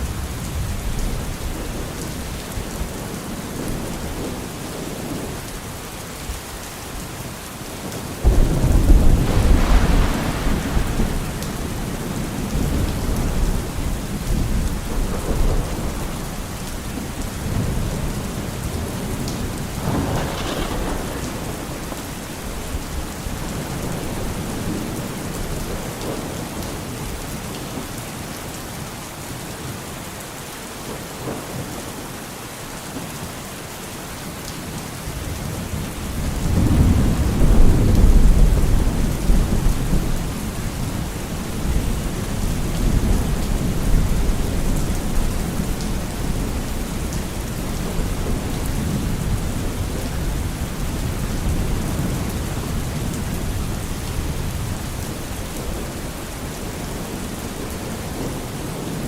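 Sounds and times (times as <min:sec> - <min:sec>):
steady rain: 0:00.0 - 0:59.0
sharp thunder crack: 0:08.2 - 0:13.6, 0:19.8 - 0:22.5
thunder rumbling: 0:08.2 - 0:26.2.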